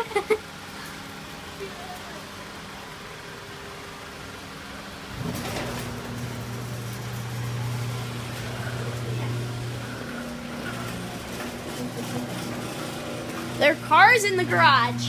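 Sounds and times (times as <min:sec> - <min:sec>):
garage door motor humming: 0:00.0 - 0:15.0
garage door opener clatter: 0:05.1 - 0:15.0.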